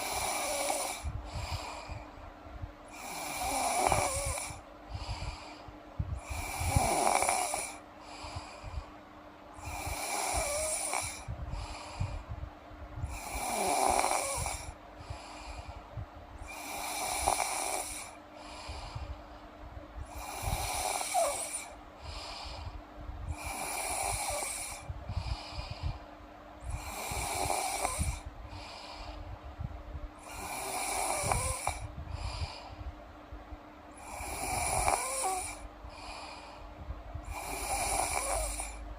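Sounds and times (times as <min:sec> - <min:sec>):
girl snoring: 0:00.0 - 0:02.0, 0:02.9 - 0:05.3, 0:06.2 - 0:07.8, 0:09.6 - 0:12.1, 0:13.0 - 0:15.2, 0:16.4 - 0:18.2, 0:20.1 - 0:22.6, 0:23.3 - 0:24.9, 0:26.7 - 0:29.0, 0:30.2 - 0:32.6, 0:34.0 - 0:36.4, 0:37.2 - 0:38.8.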